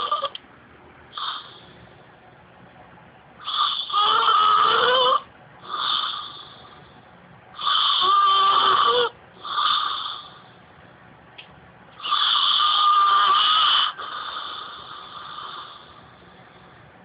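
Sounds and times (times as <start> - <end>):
woman snoring: 0.0 - 0.4, 3.4 - 6.7, 7.6 - 10.4, 12.0 - 16.0.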